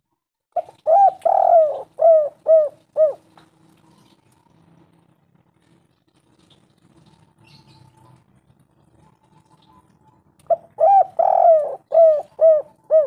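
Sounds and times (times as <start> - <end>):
dove cooing: 0.6 - 3.4, 9.1 - 13.0.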